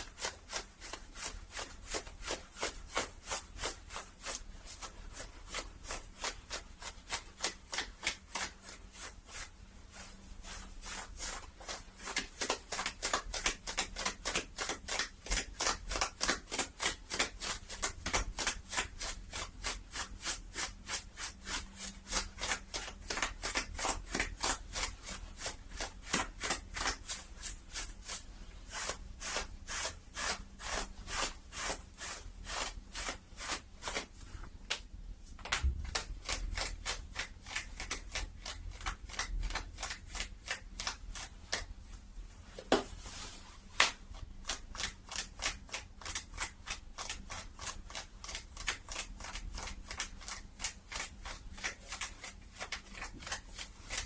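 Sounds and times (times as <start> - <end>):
fabric rubbing: 0.0 - 12.4, 41.9 - 43.8.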